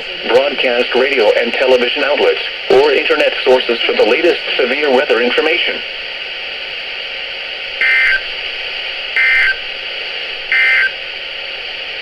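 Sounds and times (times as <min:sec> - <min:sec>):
radio hiss: 0:00.0 - 0:12.0
buzzy digital data bursts: 0:07.8 - 0:08.3.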